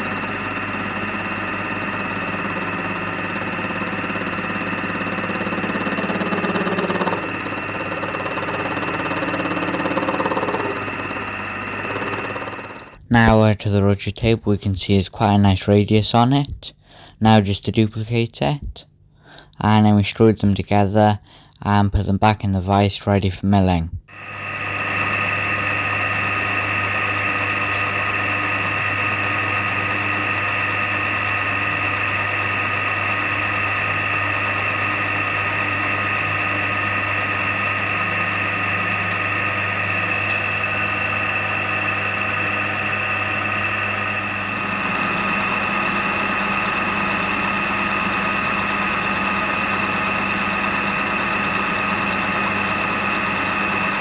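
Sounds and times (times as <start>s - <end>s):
milling machine running: 0.0s - 13.0s, 24.1s - 54.0s.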